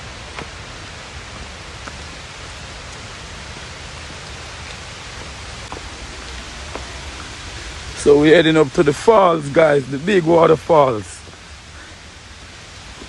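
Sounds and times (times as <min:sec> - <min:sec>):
river water rushing: 0:00.0 - 0:13.0.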